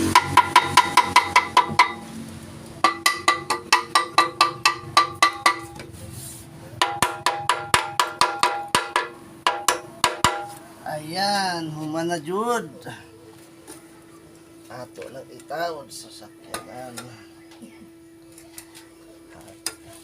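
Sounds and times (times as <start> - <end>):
hammer striking ringing metal: 0.0 - 2.0, 2.8 - 5.8, 6.8 - 10.5.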